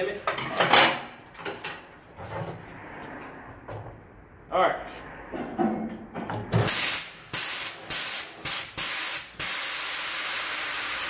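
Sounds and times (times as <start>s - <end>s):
compressed air hissing: 6.6s - 11.0s.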